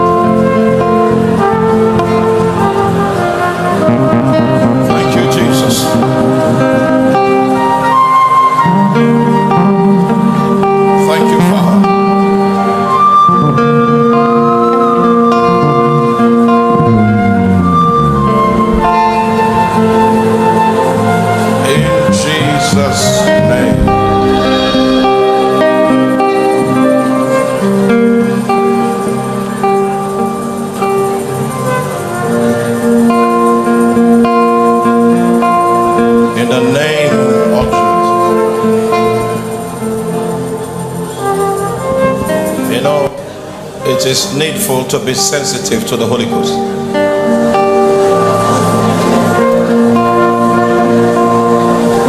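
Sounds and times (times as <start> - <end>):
guitar: 0.0 - 52.0
slow instrumental worship music: 0.0 - 52.0
person singing: 21.6 - 27.3, 36.3 - 39.5.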